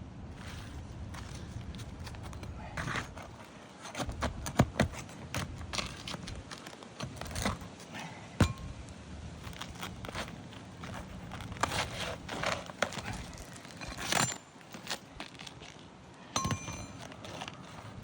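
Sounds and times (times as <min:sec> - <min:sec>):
clicks knocks and scraping on roof: 0:00.4 - 0:07.8, 0:09.4 - 0:15.9.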